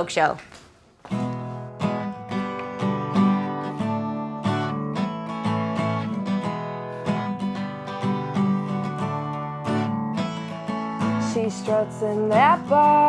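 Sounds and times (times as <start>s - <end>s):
acoustic guitar strumming: 1.0s - 13.0s.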